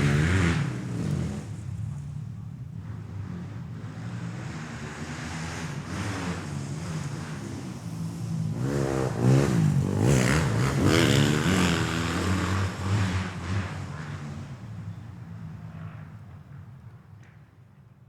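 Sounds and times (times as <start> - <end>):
motorcycle engine revving: 0.0 - 2.0, 2.8 - 14.8.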